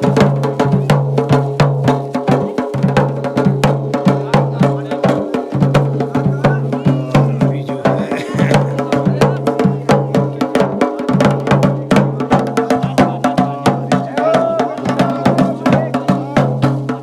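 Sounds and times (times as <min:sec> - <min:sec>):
sharp drum beat: 0:00.0 - 0:17.0.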